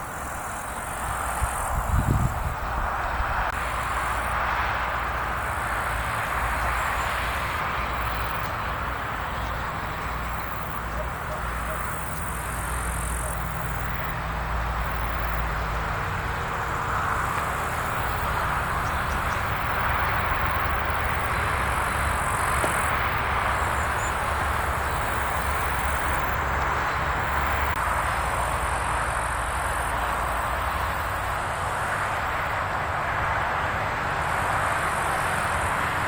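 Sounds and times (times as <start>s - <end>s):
wind buffeting microphone: 0.0s - 27.8s
wind blowing through trees: 0.0s - 36.0s.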